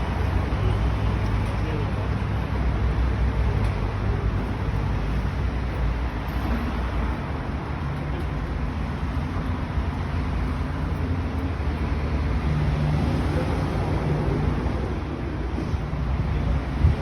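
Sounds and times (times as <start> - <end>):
vehicle rumble: 0.0 - 17.0.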